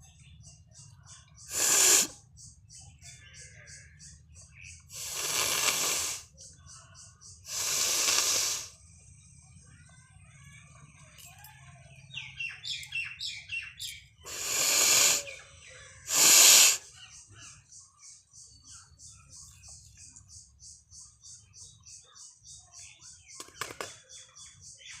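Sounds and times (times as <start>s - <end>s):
birds chirping: 0.0s - 25.0s
person forcing air through nose: 1.5s - 2.1s, 4.9s - 6.3s, 7.5s - 8.7s, 14.3s - 15.3s, 16.1s - 16.8s.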